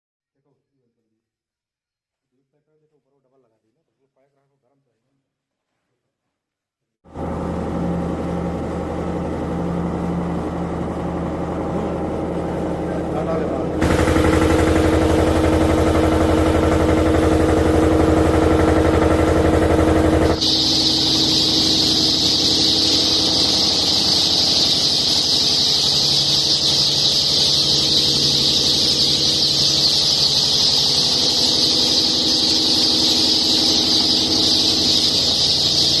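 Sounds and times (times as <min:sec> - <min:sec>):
engine humming: 0:07.2 - 0:36.0
chicks peeping: 0:13.2 - 0:36.0.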